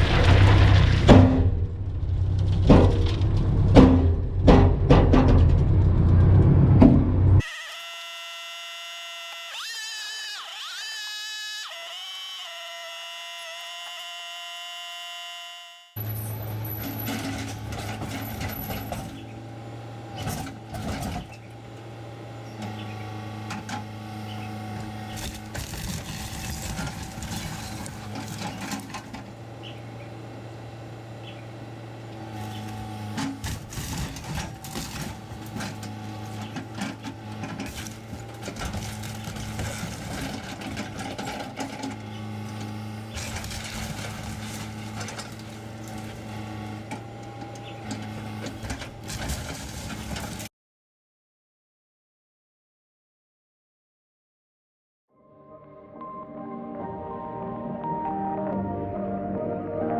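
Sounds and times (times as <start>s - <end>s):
debris clanking and crunching: 0.0s - 7.4s, 16.0s - 19.3s, 25.0s - 29.3s, 32.4s - 50.5s
excavator diesel engine: 0.0s - 7.5s, 16.0s - 50.5s.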